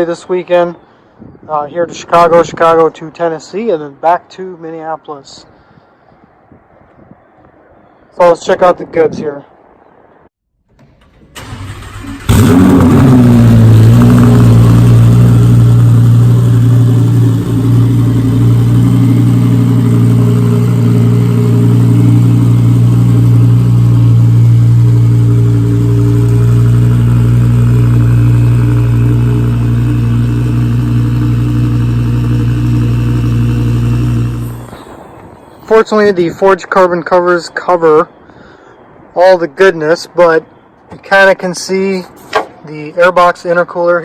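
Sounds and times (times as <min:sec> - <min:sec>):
car engine starting and idling: 0:10.6 - 0:36.1.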